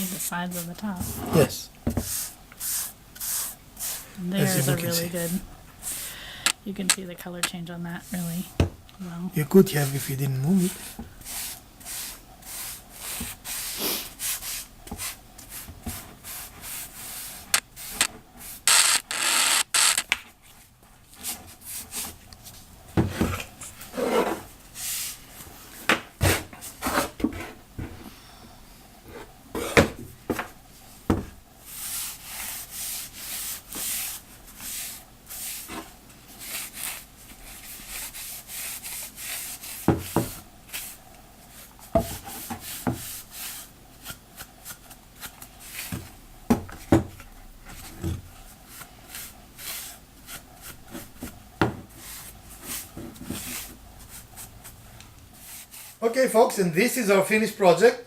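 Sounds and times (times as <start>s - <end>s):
brush swishing on wood: 31.6s - 41.7s, 55.4s - 56.0s.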